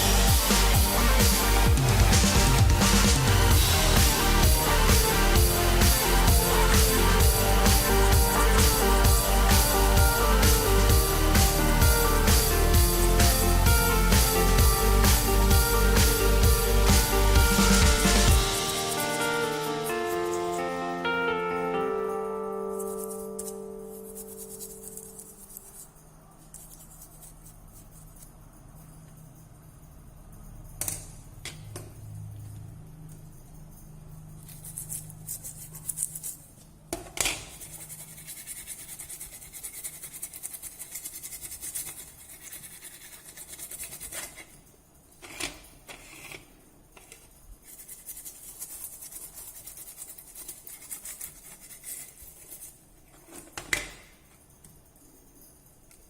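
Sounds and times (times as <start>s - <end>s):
hand tools scratching and rubbing: 0.0s - 21.1s, 22.6s - 28.4s, 34.3s - 36.5s, 37.4s - 53.6s.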